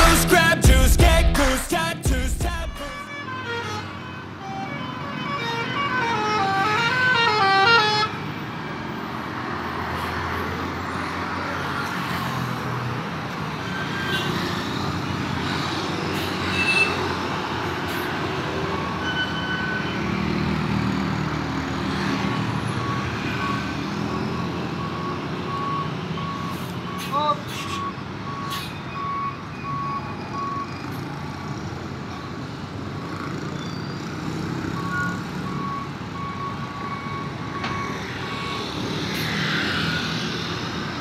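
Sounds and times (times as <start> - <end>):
bus engine running: 0.0 - 3.6
multi-tone bus horn melody: 0.0 - 8.3
street noise: 0.0 - 41.0.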